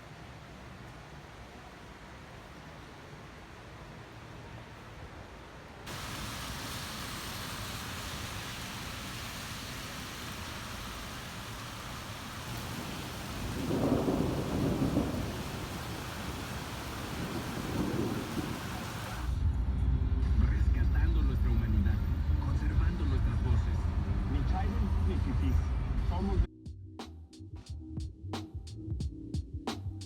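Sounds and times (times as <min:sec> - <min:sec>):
steady rain hiss: 0:00.0 - 0:19.4
rolling thunder: 0:07.8 - 0:19.4.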